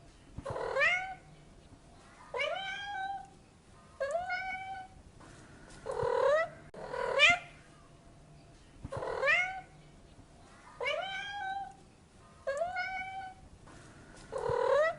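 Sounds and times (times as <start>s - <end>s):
cat meowing: 2.3s - 3.3s, 4.0s - 5.0s, 10.8s - 11.8s, 12.5s - 13.4s.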